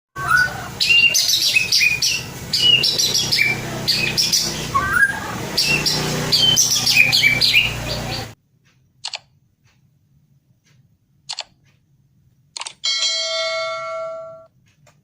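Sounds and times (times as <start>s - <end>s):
bird singing whistled phrases: 0.2s - 8.4s
steady low hum: 0.2s - 12.6s.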